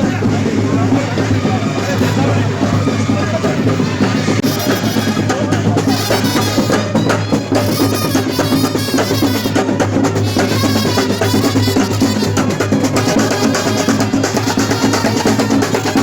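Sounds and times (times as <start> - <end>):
fast dense percussion: 0.0 - 16.0.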